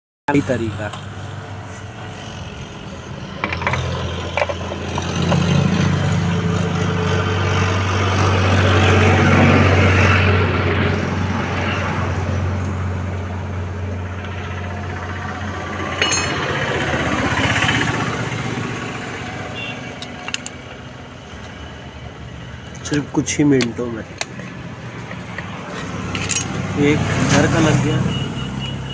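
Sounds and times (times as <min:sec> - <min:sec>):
vehicle engine humming: 0:00.3 - 0:28.9
bright metallic clink: 0:15.9 - 0:16.6
sharp metallic clicks: 0:19.8 - 0:20.9, 0:22.6 - 0:26.6.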